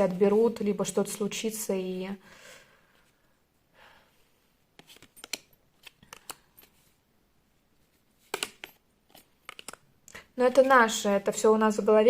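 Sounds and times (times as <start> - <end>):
cards clicking and snapping: 4.8 - 6.5, 8.3 - 8.8, 9.4 - 9.8.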